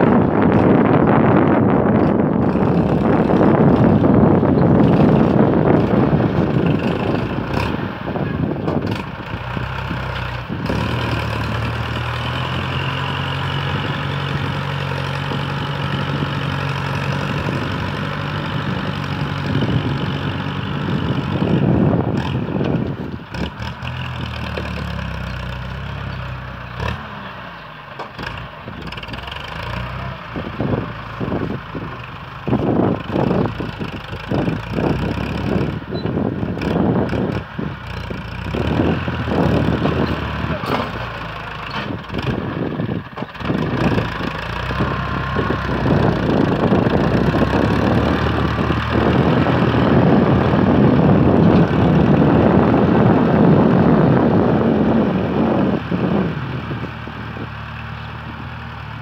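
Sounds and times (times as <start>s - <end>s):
wind buffeting microphone: 0.0s - 25.8s, 30.3s - 58.6s
tractor engine running: 0.0s - 59.0s.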